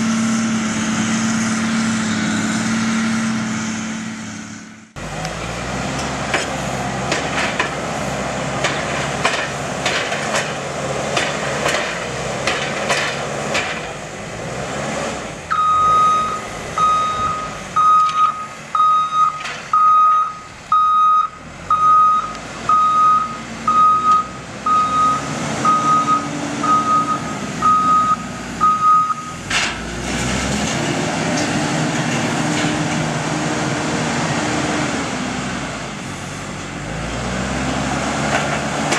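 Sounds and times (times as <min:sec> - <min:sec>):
diesel engine running: 0:00.0 - 0:38.9
knocks and rattles: 0:08.6 - 0:13.9
reversing alarm beeping: 0:15.5 - 0:29.4.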